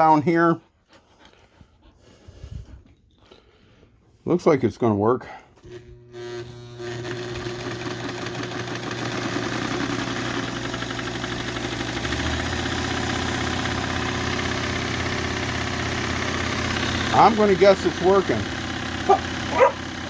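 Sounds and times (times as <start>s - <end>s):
sewing machine clattering: 7.0s - 20.0s.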